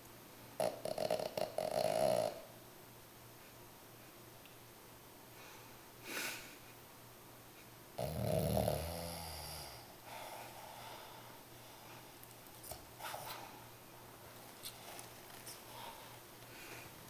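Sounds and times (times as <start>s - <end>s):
dog snoring: 0.6s - 2.5s, 8.0s - 10.8s.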